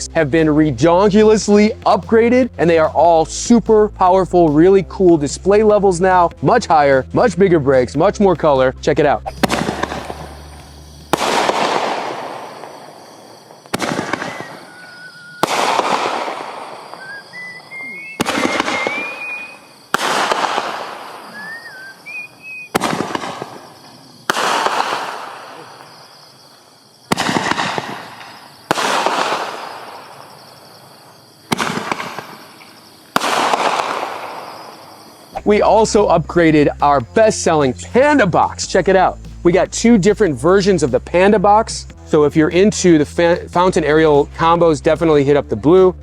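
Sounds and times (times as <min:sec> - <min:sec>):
firework noise tails: 0:09.3 - 0:26.4, 0:27.0 - 0:36.2
fireworks bangs: 0:09.3 - 0:35.4.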